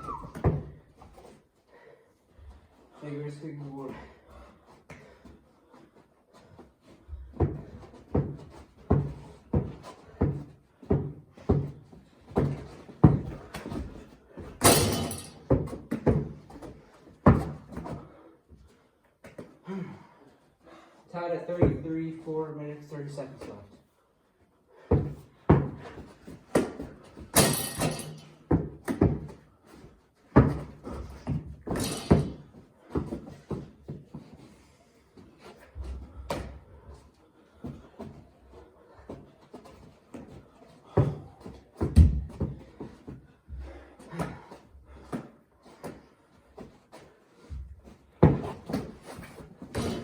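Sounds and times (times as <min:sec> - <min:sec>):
ball striking floor and surfaces: 0:07.4 - 0:18.0, 0:25.0 - 0:29.4, 0:30.4 - 0:34.0, 0:41.0 - 0:43.2, 0:48.2 - 0:50.0.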